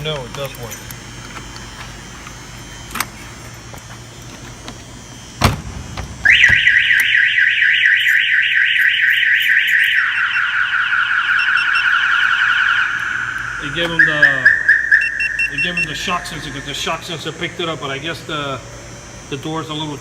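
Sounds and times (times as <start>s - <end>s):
car alarm siren whooping: 6.2s - 20.0s.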